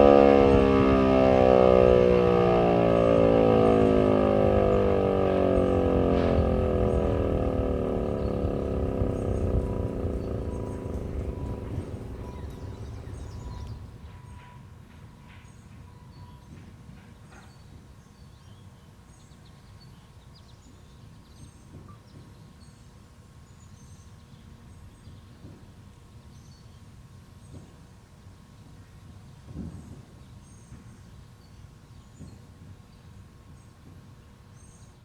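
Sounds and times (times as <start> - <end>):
low steady background rumble: 0.0 - 14.2
tornado siren: 0.0 - 14.2
faint birds chirping: 3.2 - 14.1.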